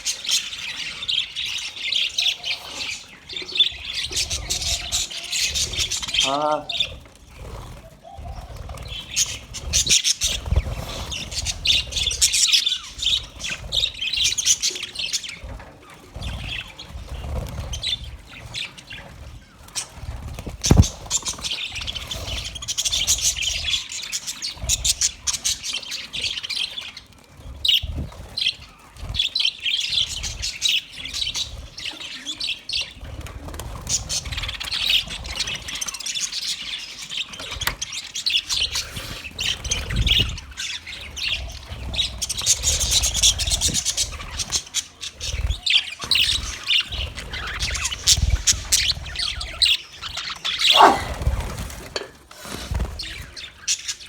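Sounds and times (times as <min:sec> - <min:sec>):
budgerigars chattering and chirping: 0:00.0 - 0:54.0.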